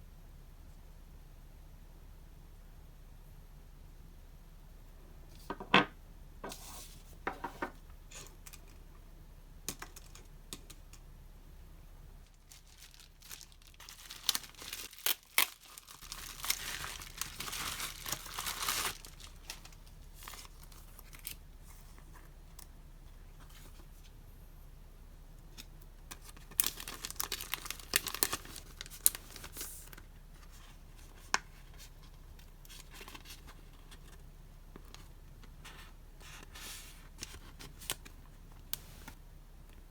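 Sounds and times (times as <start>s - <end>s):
wrapping tearing and crinkling: 12.2s - 21.4s, 26.1s - 32.0s.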